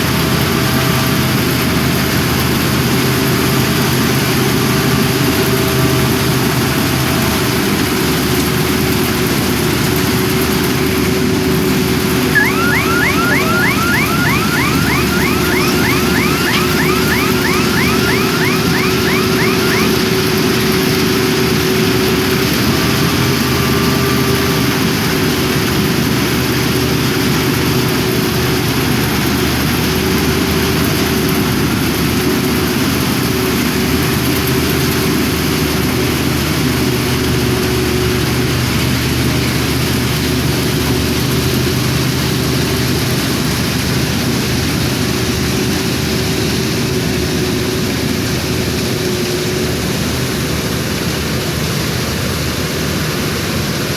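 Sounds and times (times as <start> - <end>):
machinery whine: 0.0 - 31.2
combine harvester engine drone: 0.0 - 53.9.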